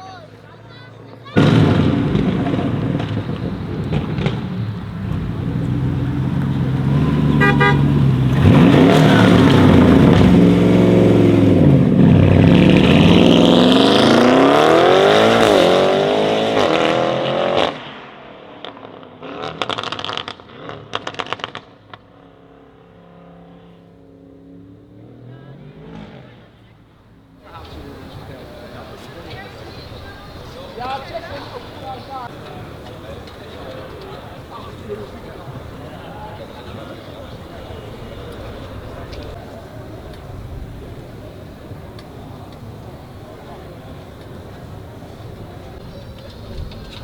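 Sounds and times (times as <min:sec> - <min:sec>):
car engine idling: 0:00.1 - 0:13.2, 0:26.8 - 0:47.0
exhaust crackles and pops: 0:01.0 - 0:16.1, 0:18.6 - 0:22.3, 0:27.5 - 0:47.0
car engine accelerating hard: 0:01.2 - 0:26.8.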